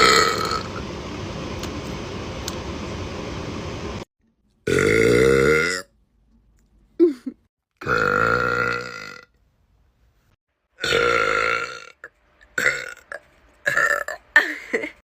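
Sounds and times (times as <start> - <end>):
woman burping deeply: 4.7 - 5.8, 7.0 - 9.2, 10.8 - 15.0.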